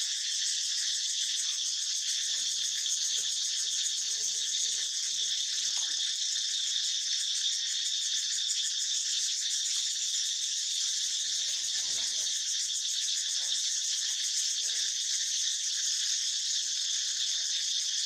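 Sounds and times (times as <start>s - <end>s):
insects buzzing: 0.0s - 18.0s
faint low chatter: 3.6s - 5.7s.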